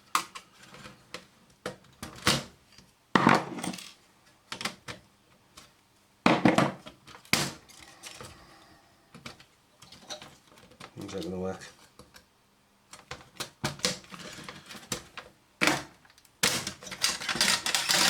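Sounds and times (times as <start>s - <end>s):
metal parts clinking and knocking: 16.9s - 18.0s.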